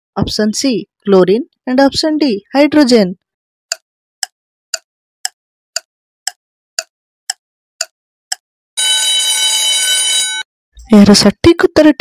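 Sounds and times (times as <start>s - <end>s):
timer ticking: 3.7s - 8.4s
electronic alarm buzzer: 8.8s - 10.5s.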